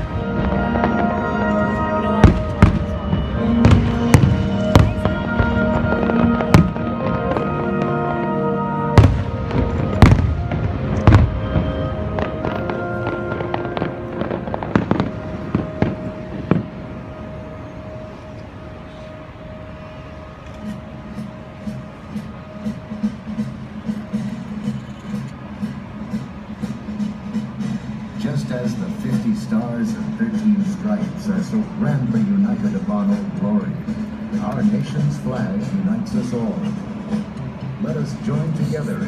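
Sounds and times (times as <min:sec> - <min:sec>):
fireworks bursting: 0:00.0 - 0:17.2
orchestral music from loudspeakers: 0:00.0 - 0:39.0.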